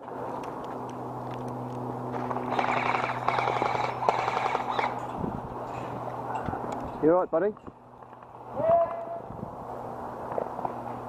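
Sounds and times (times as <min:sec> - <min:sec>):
steady low hum: 0:00.0 - 0:11.0
airsoft guns firing: 0:02.2 - 0:04.9.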